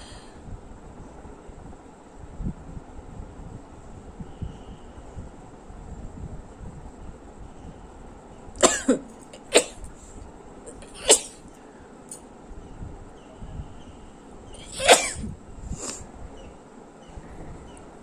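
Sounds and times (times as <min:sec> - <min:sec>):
woman sneezing: 0:08.6 - 0:09.8, 0:10.7 - 0:11.4, 0:14.6 - 0:16.0.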